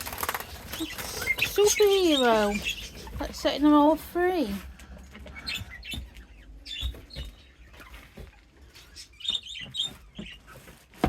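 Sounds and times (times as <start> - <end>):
bird seed rustling and pattering: 0.0 - 5.0
birds chirping: 0.0 - 11.0.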